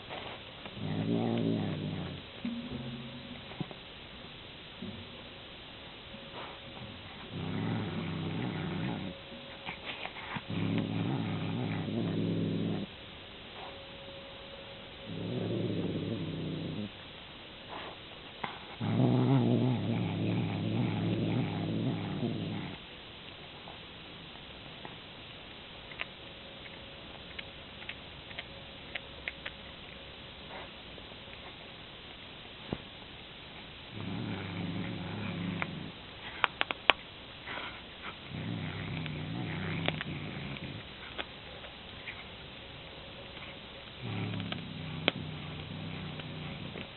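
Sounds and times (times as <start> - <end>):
cat growling: 0.8 - 3.7, 6.4 - 12.9, 15.0 - 17.0, 18.6 - 22.8, 33.9 - 36.5, 37.5 - 41.2, 44.0 - 46.9.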